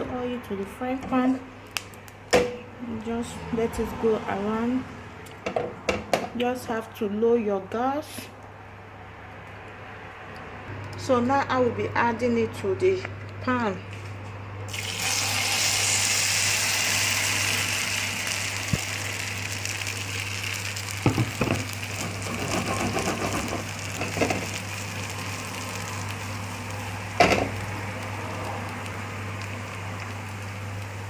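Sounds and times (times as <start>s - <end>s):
omelette sizzling in frying pan: 14.7s - 31.0s.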